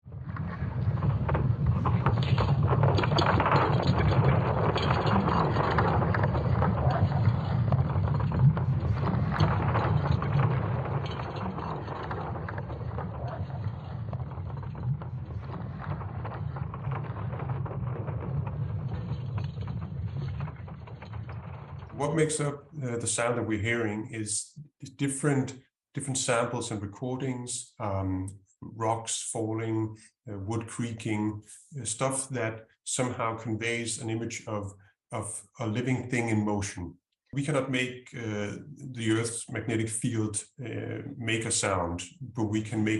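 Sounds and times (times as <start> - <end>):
crackling and creaking clicks: 0.1 - 22.5
deep rumble: 0.1 - 23.0.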